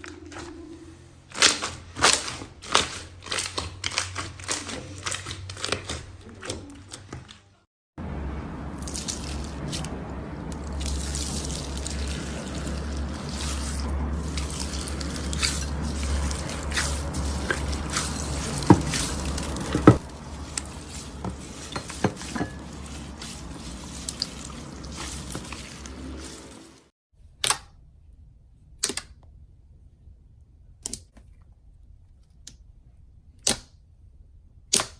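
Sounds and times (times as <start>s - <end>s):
low hum: 8.0s - 26.9s
slime squishing: 8.7s - 26.8s
sharp slime pops: 34.7s - 34.9s.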